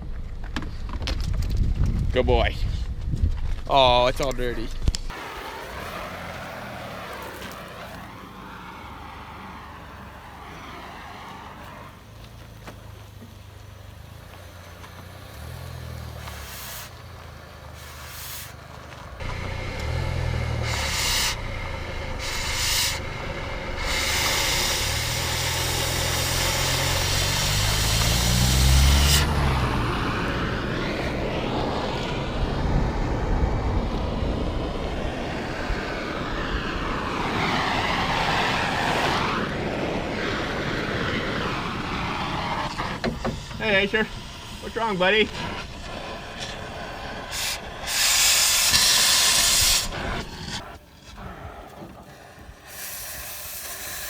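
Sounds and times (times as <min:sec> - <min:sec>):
vehicle engine revving: 0:05.1 - 0:54.0
loud hiss: 0:16.2 - 0:17.1, 0:17.7 - 0:18.6, 0:19.3 - 0:29.3, 0:41.2 - 0:54.0.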